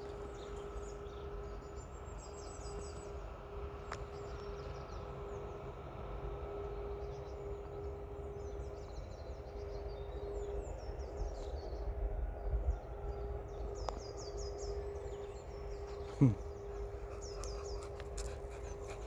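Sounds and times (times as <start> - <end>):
faint steady hum: 0.0 - 19.0
steady low rumble: 10.4 - 19.0
small birds chirping: 13.5 - 19.0.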